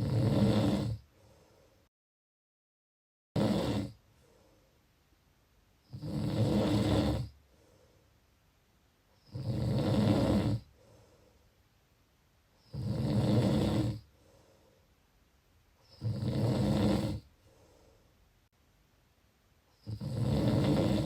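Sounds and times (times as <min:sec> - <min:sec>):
loud snoring: 0:00.0 - 0:01.1, 0:03.4 - 0:04.0, 0:05.9 - 0:07.4, 0:09.2 - 0:10.7, 0:12.6 - 0:14.1, 0:15.8 - 0:17.3, 0:19.8 - 0:21.0
faint breathing: 0:01.0 - 0:01.9, 0:04.0 - 0:04.9, 0:07.3 - 0:08.3, 0:10.6 - 0:11.7, 0:14.0 - 0:15.1, 0:17.3 - 0:18.3.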